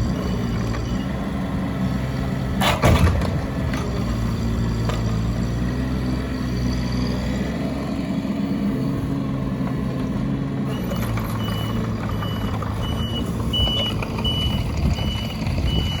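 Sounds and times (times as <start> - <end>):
diesel engine running: 0.0 - 16.0
travel alarm beeping: 10.8 - 16.0.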